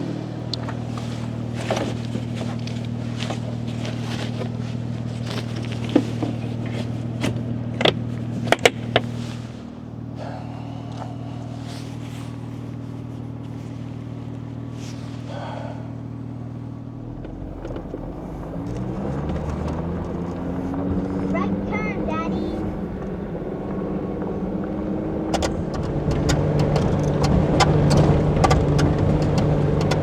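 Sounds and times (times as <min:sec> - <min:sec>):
vehicle engine idling: 0:00.0 - 0:30.0
sharp clicks and knocks: 0:25.3 - 0:30.0.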